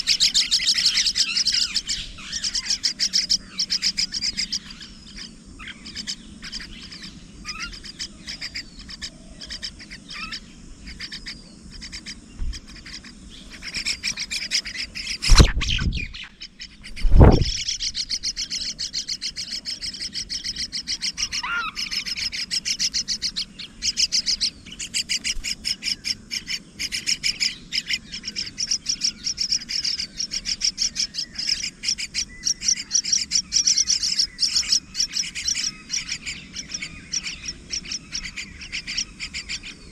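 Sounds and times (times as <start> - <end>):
birds chirping rapidly: 0.0 - 39.9
loud thumps: 15.2 - 16.1, 17.0 - 17.6.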